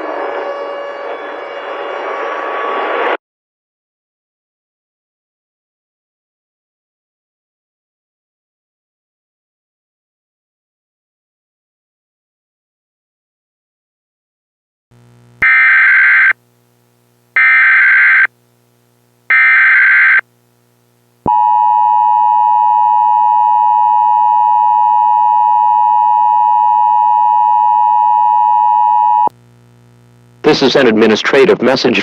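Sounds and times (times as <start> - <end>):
screechy data bursts: 15.4 - 16.4, 17.4 - 18.3, 19.3 - 20.2
two-tone attention signal: 15.4 - 16.4, 17.4 - 18.3, 19.3 - 20.2.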